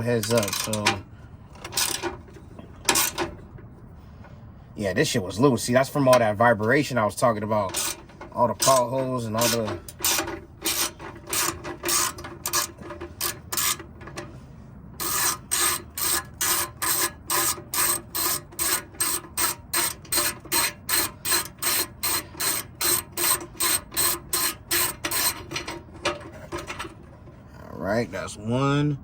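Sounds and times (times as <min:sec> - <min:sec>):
ratchet wrench clicking: 0:00.2 - 0:00.9, 0:01.6 - 0:02.1, 0:02.9 - 0:03.2, 0:07.7 - 0:14.2, 0:15.0 - 0:26.9.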